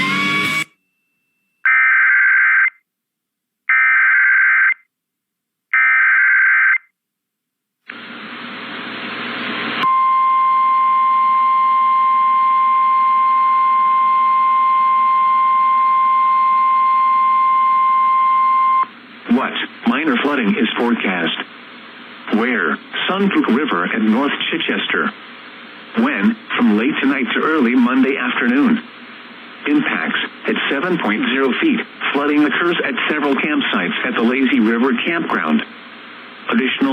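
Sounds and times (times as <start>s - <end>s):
radio hiss: 19.1s - 36.9s.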